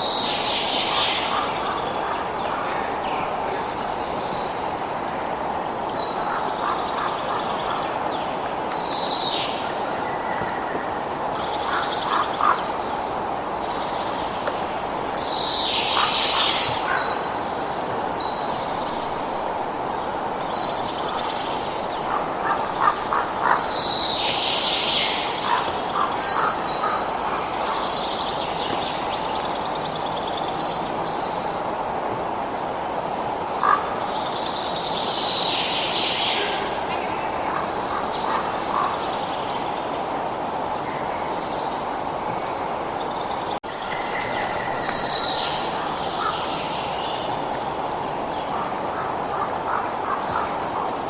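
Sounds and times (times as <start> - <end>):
birds chirping: 33.6 - 51.0.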